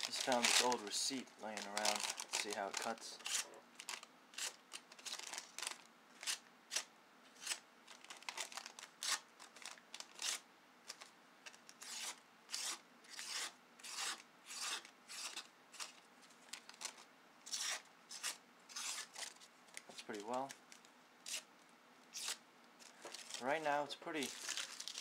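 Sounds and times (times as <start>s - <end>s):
knife slicing paper: 11.8s - 15.9s, 17.5s - 19.4s.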